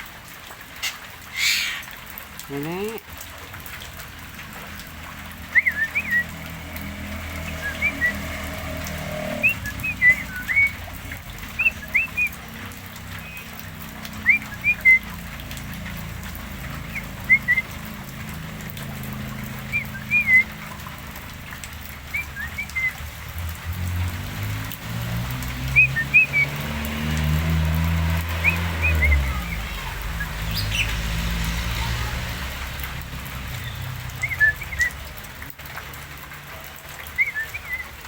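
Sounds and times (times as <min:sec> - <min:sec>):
myna whistled chirps: 0:00.8 - 0:01.9, 0:05.5 - 0:06.3.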